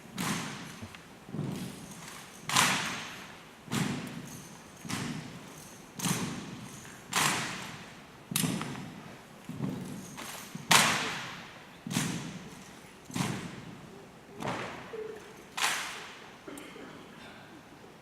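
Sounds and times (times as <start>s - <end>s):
rifles slapped and struck: 2.0s - 5.4s, 6.0s - 8.9s, 10.1s - 13.6s, 15.5s - 16.2s.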